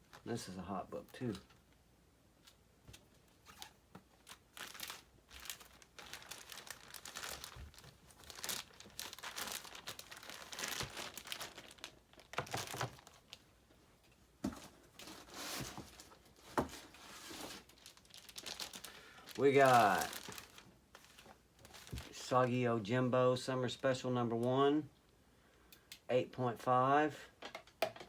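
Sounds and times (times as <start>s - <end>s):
packing material crinkling: 3.3s - 13.5s, 14.4s - 22.3s.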